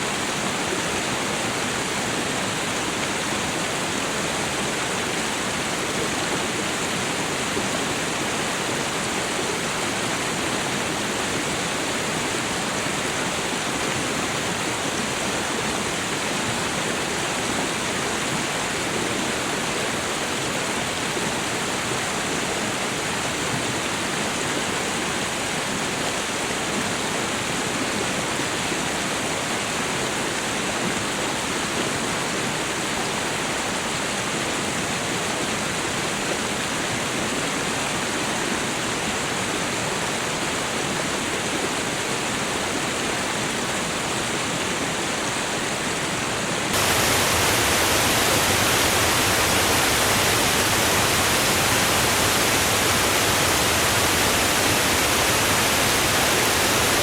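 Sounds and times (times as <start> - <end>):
waterfall rushing: 46.6 - 57.0.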